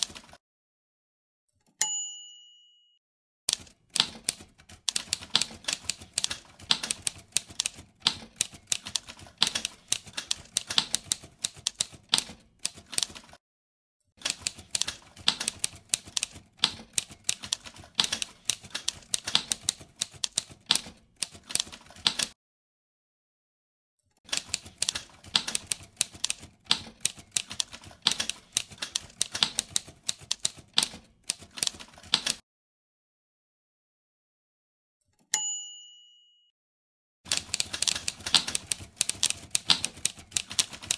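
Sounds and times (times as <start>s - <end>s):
typewriter keys clacking: 0.0s - 0.4s, 3.5s - 13.4s, 14.2s - 22.4s, 24.3s - 32.4s, 37.3s - 40.9s.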